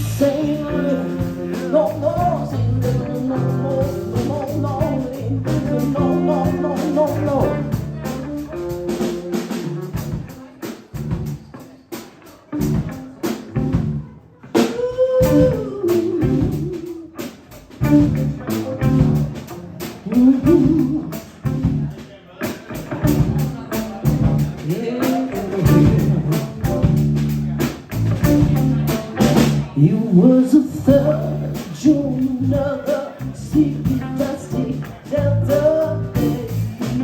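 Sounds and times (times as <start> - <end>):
bending guitar notes: 0.0 - 10.4, 15.2 - 22.0, 22.6 - 29.8
live band playing instrumental: 0.0 - 37.0.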